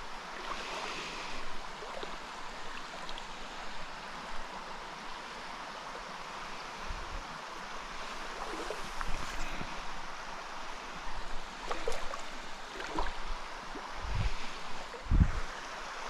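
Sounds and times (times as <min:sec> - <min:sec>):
stream rushing over rocks: 0:00.0 - 0:16.0.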